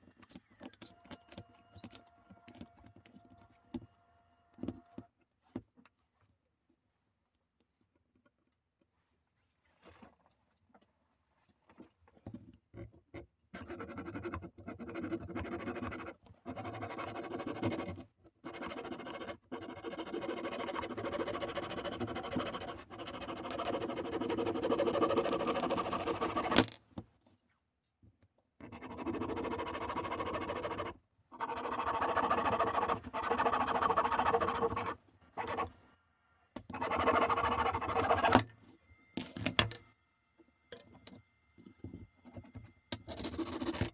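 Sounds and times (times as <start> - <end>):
hand tool scraping: 28.8 - 35.7, 36.8 - 38.4.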